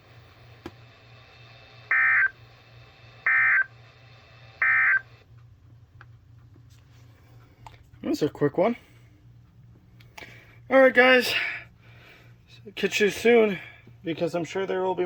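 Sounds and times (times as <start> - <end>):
steady low hum: 0.0 - 15.0
squawking modem-like data tones: 1.9 - 2.4, 3.2 - 3.7, 4.6 - 5.2.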